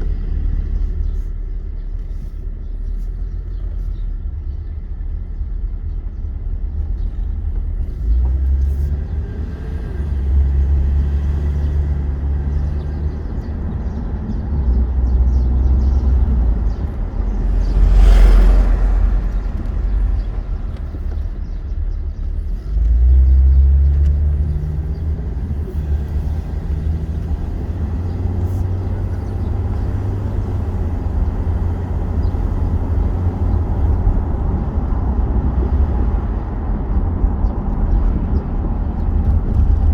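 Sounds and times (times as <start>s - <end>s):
car rumble from inside: 0.0s - 39.9s
vehicle passing: 15.0s - 39.9s.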